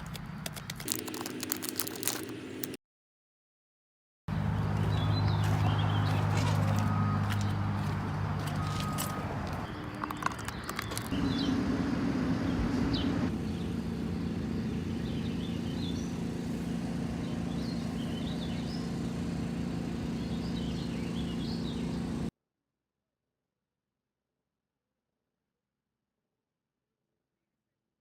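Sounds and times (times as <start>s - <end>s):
small birds chirping: 0.8s - 2.8s, 4.8s - 11.6s, 12.5s - 19.2s, 19.9s - 22.3s.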